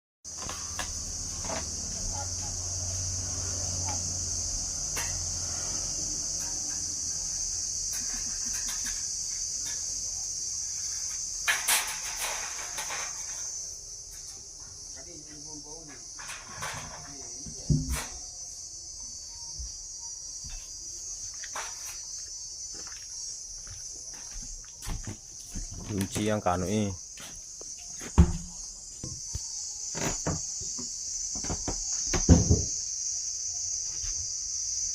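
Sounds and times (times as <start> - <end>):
insect chorus: 0.3 - 34.9
knocks and thumps: 16.2 - 18.2, 28.0 - 32.8.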